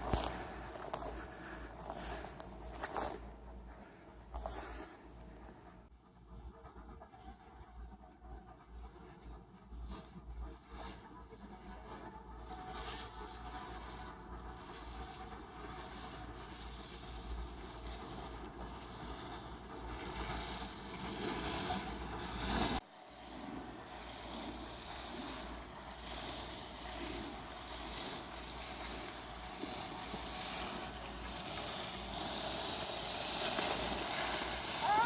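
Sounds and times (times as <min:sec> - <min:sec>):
skis hissing on snow: 0:00.0 - 0:03.2, 0:04.4 - 0:04.9, 0:12.5 - 0:35.0.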